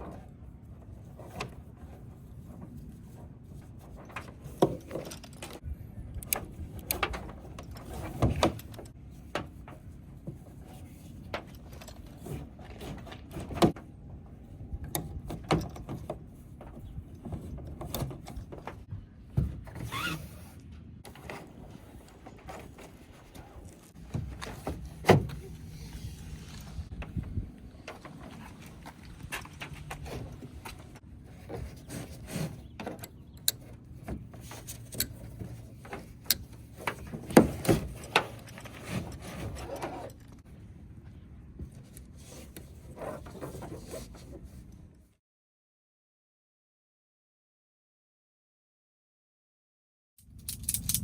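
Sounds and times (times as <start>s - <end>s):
metal gear clicking and knocking: 50.4s - 51.0s.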